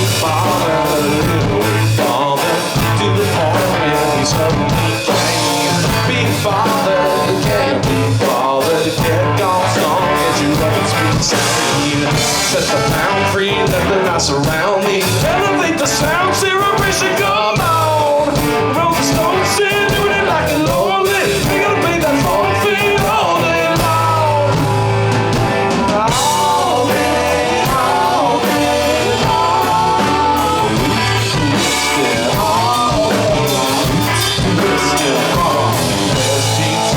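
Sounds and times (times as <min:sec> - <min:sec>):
melodic lead guitar line: 0:00.0 - 0:36.9
rock band playing live: 0:00.0 - 0:36.9.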